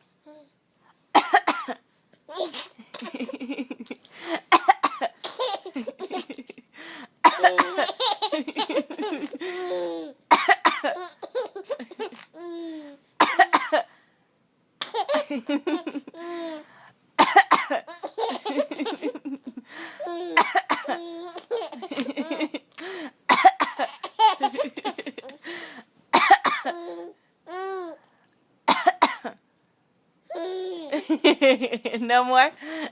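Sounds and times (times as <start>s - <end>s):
child coughing: 1.2s - 3.2s, 4.5s - 5.7s, 7.2s - 12.0s, 13.2s - 13.9s, 17.2s - 19.0s, 20.1s - 22.4s, 23.3s - 24.6s, 26.2s - 27.1s, 28.7s - 29.4s
child laughing: 5.3s - 6.6s, 7.4s - 10.2s, 18.0s - 22.7s, 23.8s - 25.4s.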